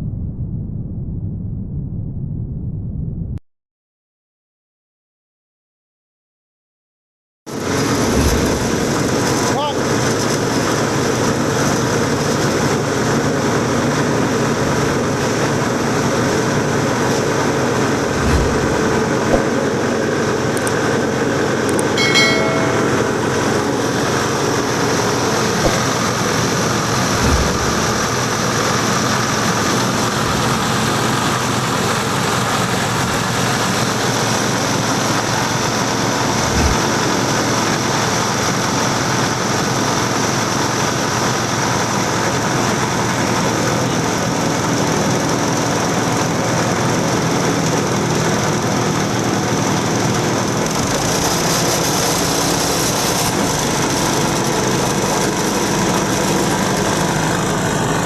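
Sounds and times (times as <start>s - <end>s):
grinding mill mechanical din: 7.6s - 58.0s
low knocks: 18.0s - 19.6s, 22.0s - 23.5s, 27.0s - 28.2s
brief pitched tone: 22.0s - 23.8s.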